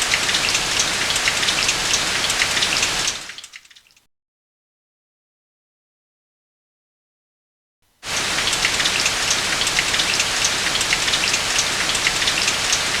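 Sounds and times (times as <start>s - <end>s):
heavy rain on hard surface: 0.0s - 3.6s, 8.0s - 13.0s.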